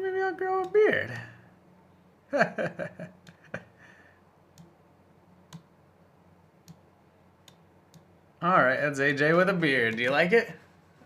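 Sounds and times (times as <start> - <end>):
sharp clicks: 7.4 - 8.1.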